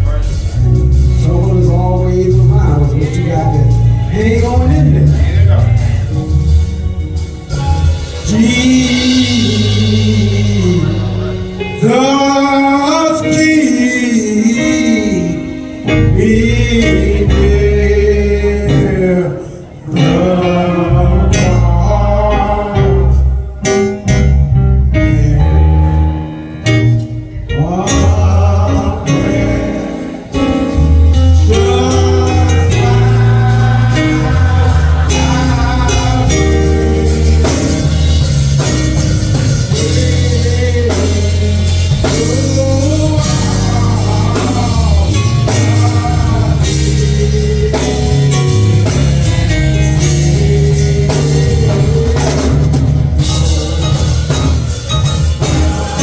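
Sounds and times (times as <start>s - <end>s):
band with guitar bass and drums: 0.0s - 56.0s
person singing hymn: 7.5s - 24.0s, 27.3s - 54.7s, 55.4s - 56.0s.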